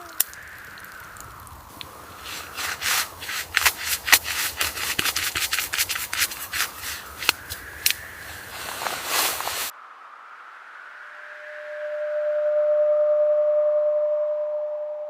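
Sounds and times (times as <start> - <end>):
faint howling wind: 0.0 - 14.6
rapid scraping strokes: 2.2 - 9.7.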